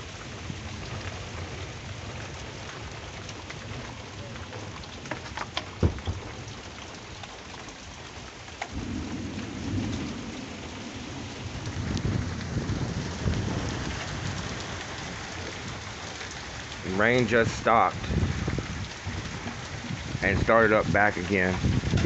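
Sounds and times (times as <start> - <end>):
steady rain: 0.0 - 22.0
thunder rumbling: 8.7 - 22.0.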